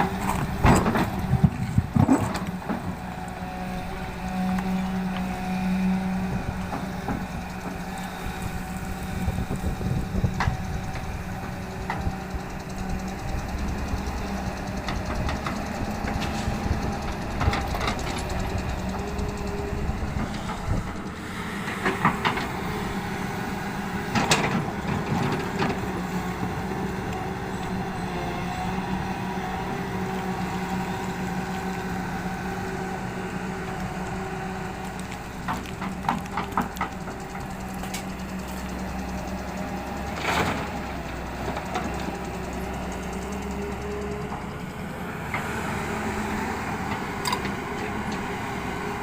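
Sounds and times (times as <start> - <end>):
machine clanks and knocks: 0.0 - 3.0
excavator diesel engine running: 0.0 - 49.0.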